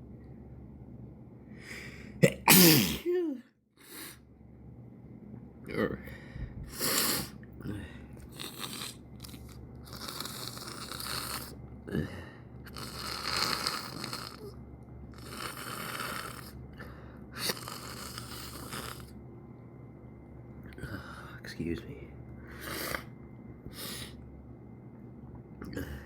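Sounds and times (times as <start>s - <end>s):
person breathing heavily: 1.6s - 2.2s, 6.0s - 8.2s, 23.7s - 24.2s
person sniffing: 6.7s - 7.4s, 22.5s - 23.1s, 23.7s - 24.2s.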